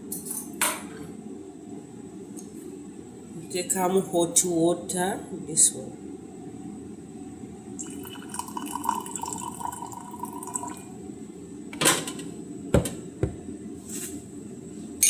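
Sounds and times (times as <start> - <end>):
hot water pouring: 7.8 - 11.0.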